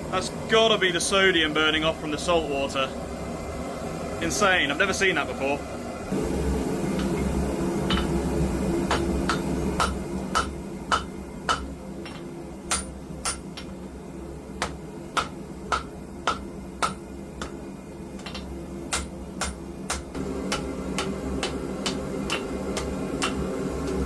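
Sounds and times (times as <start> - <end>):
forge running: 0.0 - 24.0
hammer striking steel on anvil: 7.9 - 8.2, 8.8 - 13.9, 14.6 - 17.6, 18.2 - 24.0.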